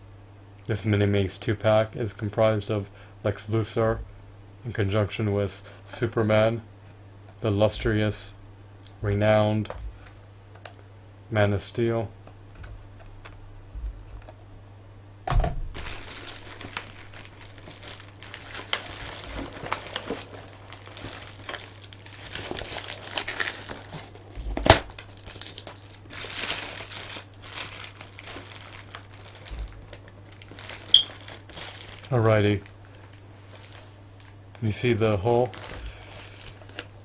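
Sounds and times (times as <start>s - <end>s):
packaging crinkling and rustling: 15.7s - 37.0s.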